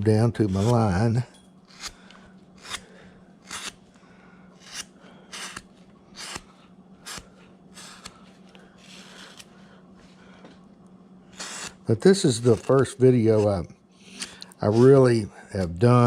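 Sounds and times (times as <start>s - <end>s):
carving gouge paring wood: 0.2s - 1.0s, 2.6s - 2.8s, 3.4s - 3.8s, 4.6s - 5.6s, 6.2s - 8.2s, 8.8s - 9.4s, 11.3s - 16.0s.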